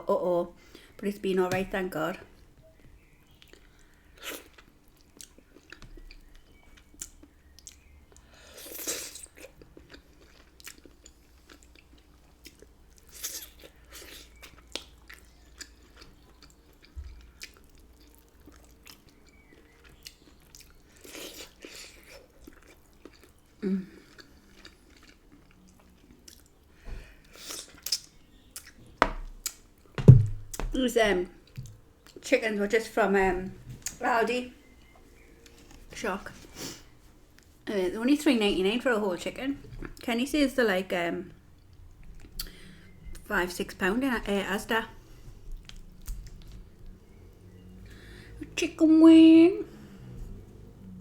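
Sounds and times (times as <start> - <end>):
faint low hum: 0.0 - 51.0
person chewing food: 3.0 - 30.6, 41.6 - 43.0, 45.2 - 48.1.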